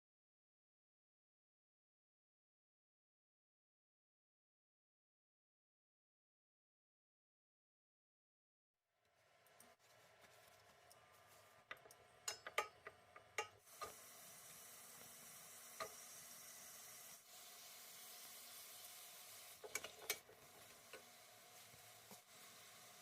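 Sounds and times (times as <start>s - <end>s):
food sizzling in a pan: 11.0s - 23.0s.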